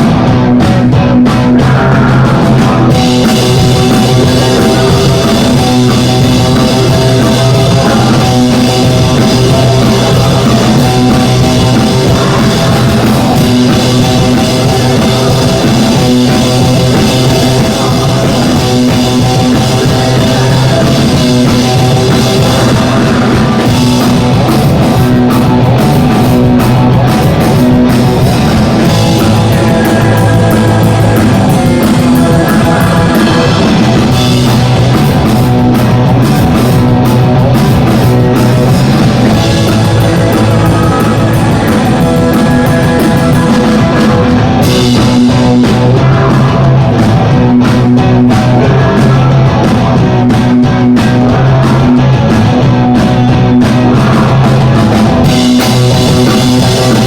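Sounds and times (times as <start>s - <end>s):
drum kit beat: 0.0s - 57.0s
live rock band playing: 0.0s - 57.0s.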